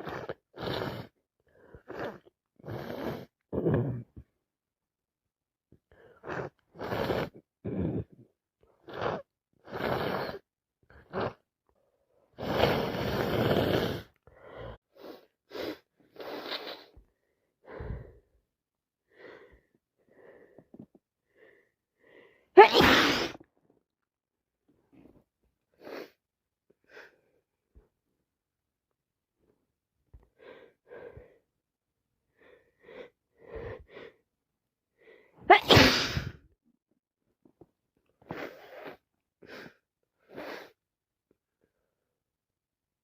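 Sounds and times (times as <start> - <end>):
person blowing nose: 0.0 - 1.1, 1.9 - 3.9, 6.2 - 8.0, 8.8 - 10.4, 12.4 - 14.1, 15.0 - 17.0, 22.6 - 23.4, 35.5 - 36.4, 38.2 - 40.8
loud sneeze: 22.6 - 23.4, 35.5 - 36.4
person sniffling: 35.5 - 36.4.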